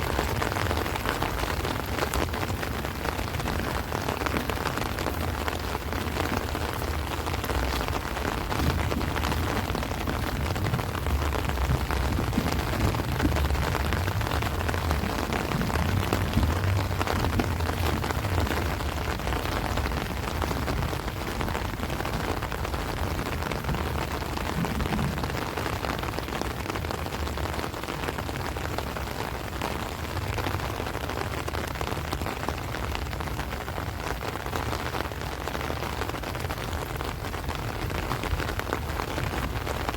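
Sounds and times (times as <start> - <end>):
wind gusts rumbling: 0.0 - 30.7
heavy rain on plants and trees: 0.0 - 39.9.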